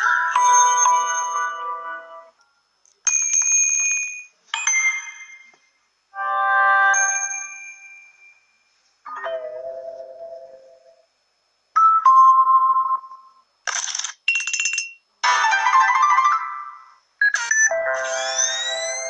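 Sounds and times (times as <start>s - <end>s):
electronic chimes and tones: 17.2s - 19.0s.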